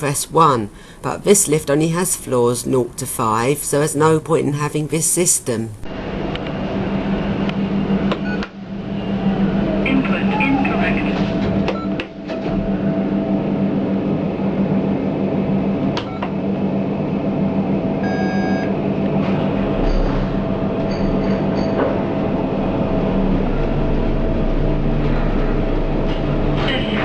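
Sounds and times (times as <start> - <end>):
lift car humming: 5.8 - 27.0.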